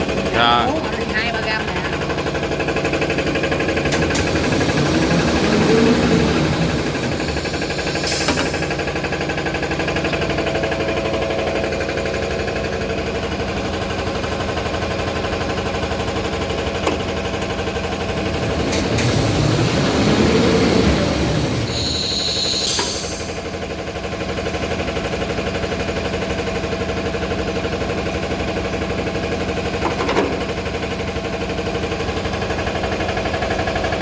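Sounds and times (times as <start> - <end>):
machine mechanical hum: 0.0 - 11.8.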